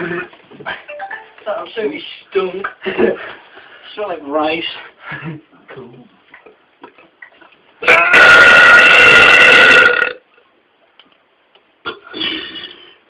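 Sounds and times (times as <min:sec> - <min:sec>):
man burping: 0:07.8 - 0:10.2, 0:11.8 - 0:13.0.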